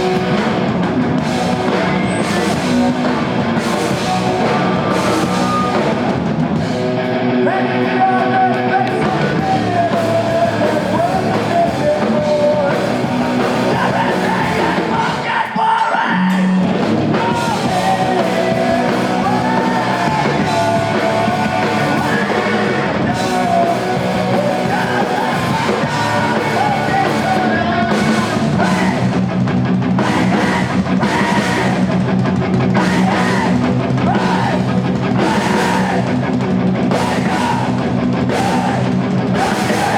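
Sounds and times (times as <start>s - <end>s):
rock band playing live: 0.0s - 39.9s
person singing: 7.4s - 29.2s, 32.8s - 36.1s.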